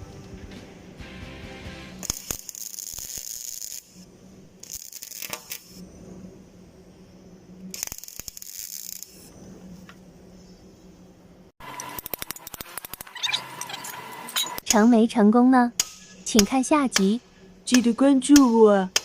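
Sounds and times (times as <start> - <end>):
hissing crackling welding bursts: 1.9 - 5.8, 7.6 - 9.4
steady low hum: 3.6 - 19.0.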